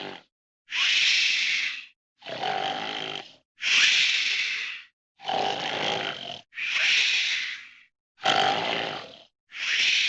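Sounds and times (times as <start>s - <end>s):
rattling snore: 8.2s - 9.3s.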